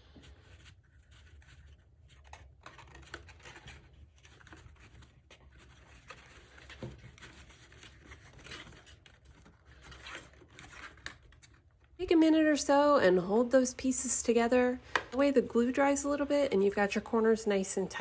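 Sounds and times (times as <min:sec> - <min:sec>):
cardstock rustling and tapping: 0:00.2 - 0:11.7.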